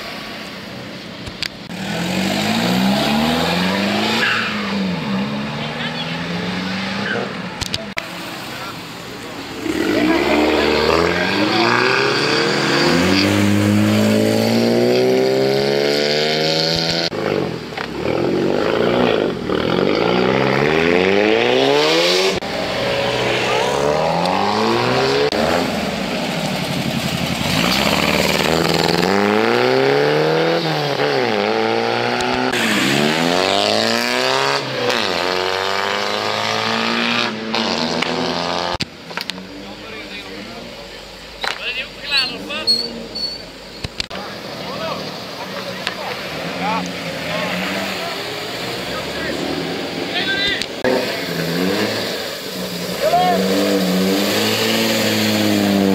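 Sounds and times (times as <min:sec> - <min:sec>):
car engines revving: 0:00.0 - 0:55.9.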